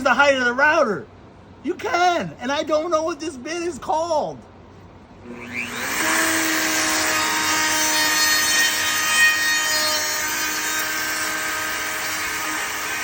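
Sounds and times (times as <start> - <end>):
router bit cutting wood: 5.2 - 13.0
wood router whining: 5.2 - 13.0.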